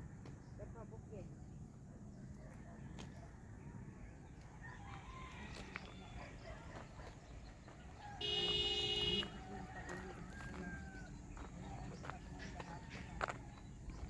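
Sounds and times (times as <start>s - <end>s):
rooster crowing: 4.6s - 6.2s, 8.0s - 11.5s.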